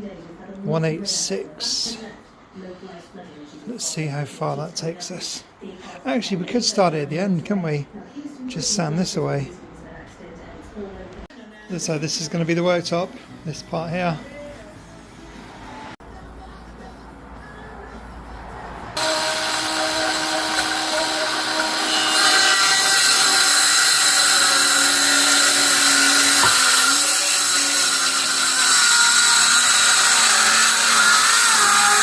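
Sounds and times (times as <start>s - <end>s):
power saw cutting wood: 19.0s - 32.0s.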